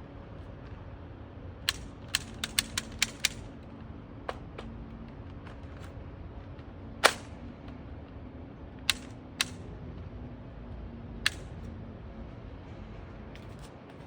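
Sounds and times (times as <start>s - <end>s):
toy gun shots: 1.7s - 3.5s, 7.0s - 7.3s, 8.9s - 9.6s, 11.3s - 11.5s.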